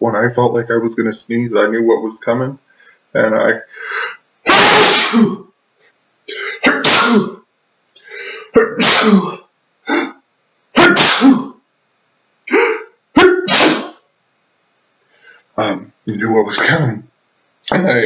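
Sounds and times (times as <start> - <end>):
quick intake of breath: 3.7 - 4.2, 15.1 - 15.5
man sneezing: 3.7 - 5.4, 6.3 - 7.4, 8.1 - 10.2, 10.8 - 11.6, 12.5 - 14.0.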